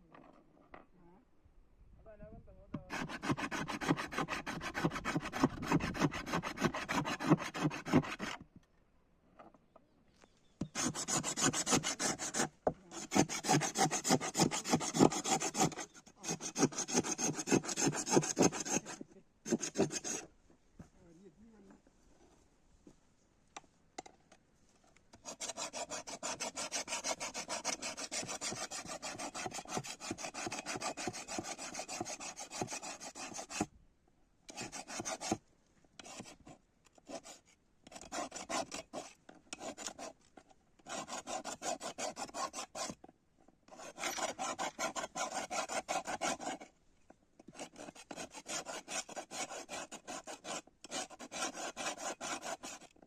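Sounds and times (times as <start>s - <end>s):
hand file rasping: 2.9s - 8.4s, 10.6s - 20.3s, 25.2s - 33.7s, 34.5s - 35.4s, 36.0s - 40.2s, 40.8s - 43.0s, 43.7s - 46.7s, 47.4s - 53.0s.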